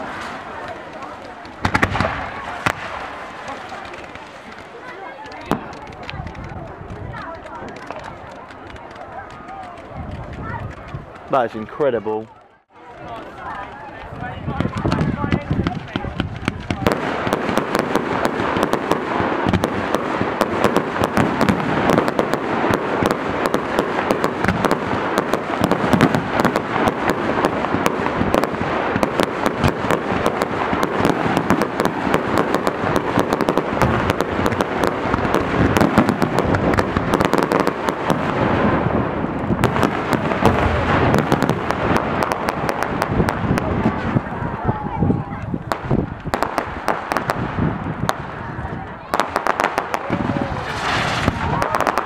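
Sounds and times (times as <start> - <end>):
fireworks bangs and crackling: 0.0 - 52.0.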